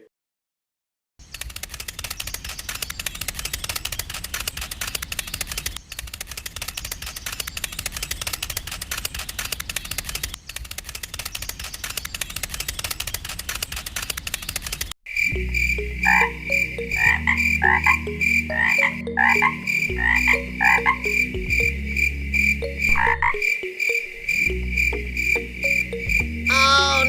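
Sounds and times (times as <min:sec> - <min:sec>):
small geared motor rattling: 0:01.2 - 0:14.9.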